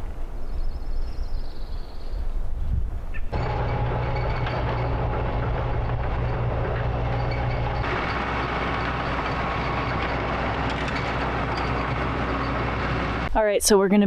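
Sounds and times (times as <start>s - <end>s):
quad engine running: 3.4s - 13.3s.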